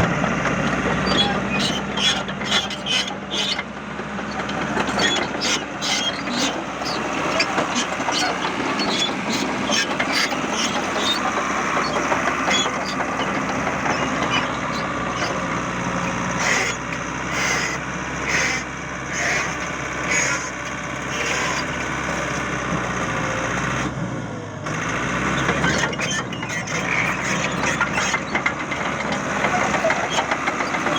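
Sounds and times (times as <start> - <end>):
rattling and clanking: 0.0 - 17.7, 25.4 - 30.9
bulldozer diesel engine running: 0.0 - 30.9.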